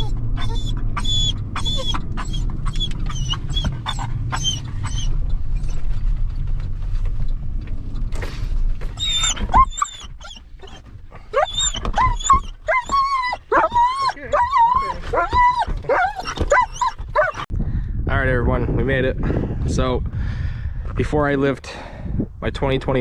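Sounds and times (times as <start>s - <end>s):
dog whining and whimpering: 0.0s - 5.9s, 8.9s - 17.5s
moving truck rumble: 0.0s - 22.4s.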